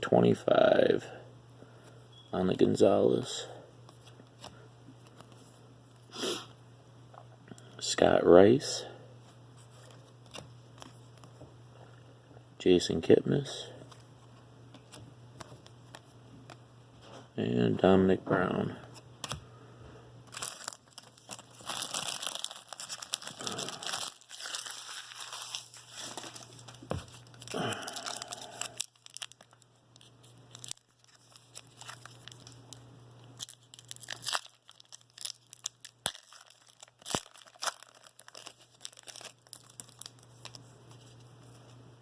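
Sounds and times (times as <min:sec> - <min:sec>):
foil wrapper tearing and crinkling: 0:20.3 - 0:41.2.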